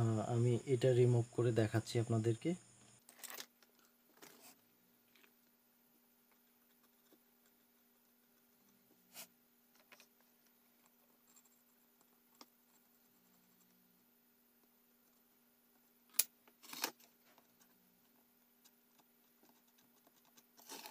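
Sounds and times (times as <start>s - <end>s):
faint steady hum: 0.0s - 20.9s.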